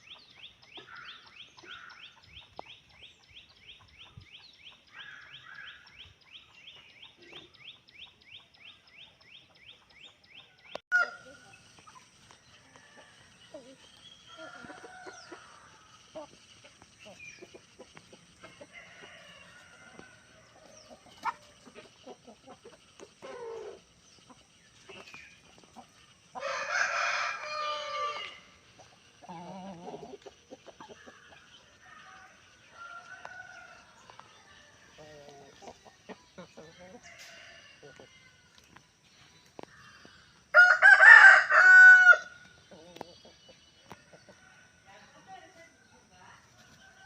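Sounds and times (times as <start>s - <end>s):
chickens clucking: 0.0s - 47.0s
rooster crowing: 10.9s - 11.4s, 14.3s - 16.0s, 18.6s - 21.4s, 26.4s - 28.6s, 31.8s - 34.2s, 40.5s - 42.4s.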